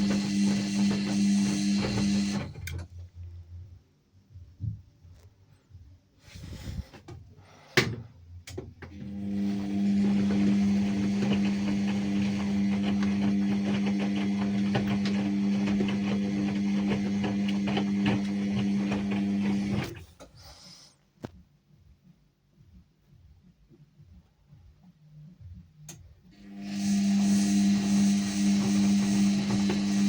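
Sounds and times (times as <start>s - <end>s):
washing machine motor hum: 0.0s - 3.0s, 6.2s - 20.2s, 26.3s - 30.0s.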